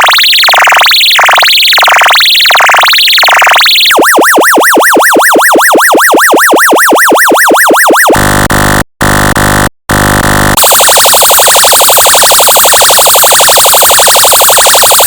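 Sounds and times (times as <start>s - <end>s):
rapid pulsing alarm tone: 0.0s - 15.0s
siren yelp sweeping: 3.3s - 8.2s, 10.6s - 15.0s.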